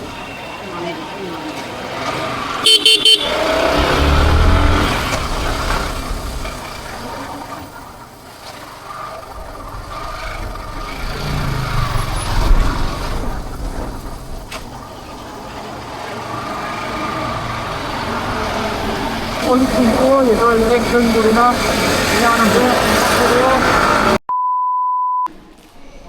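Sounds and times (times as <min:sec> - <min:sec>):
vehicle engines in traffic: 0:00.0 - 0:24.2.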